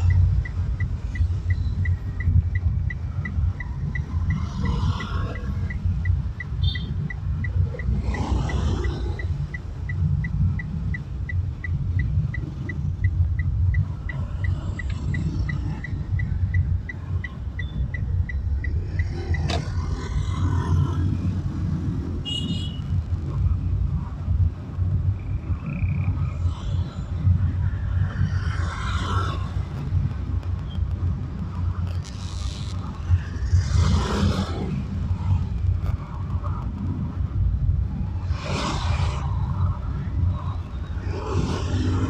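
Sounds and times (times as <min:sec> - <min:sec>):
regular light ticking: 0:00.0 - 0:19.6
car road and engine rumble: 0:00.0 - 0:42.0.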